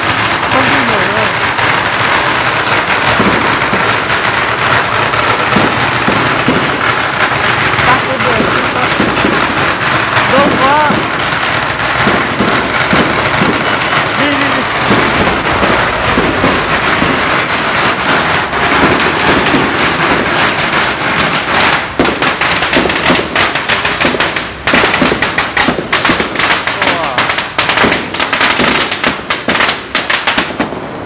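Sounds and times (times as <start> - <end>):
firecrackers banging: 0.0 - 31.0
crowd voices: 2.4 - 20.4.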